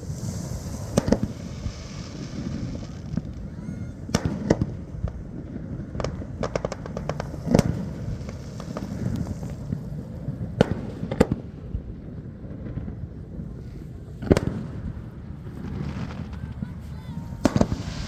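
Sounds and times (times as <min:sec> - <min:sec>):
continuous low rumble: 0:00.0 - 0:18.0
fireworks bangs: 0:00.0 - 0:18.0
crackling pops: 0:05.9 - 0:11.4, 0:15.6 - 0:18.0.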